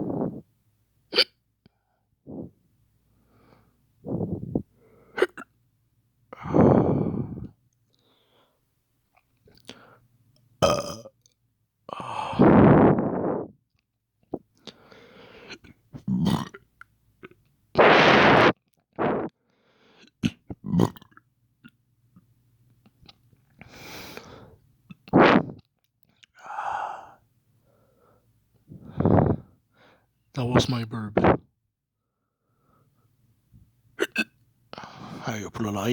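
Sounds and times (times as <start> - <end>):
man fake hiccuping: 1.1 - 1.4, 5.2 - 5.5, 16.0 - 16.6, 20.2 - 21.1, 34.0 - 34.4
man belching: 10.6 - 11.1, 16.1 - 16.6, 20.2 - 21.1.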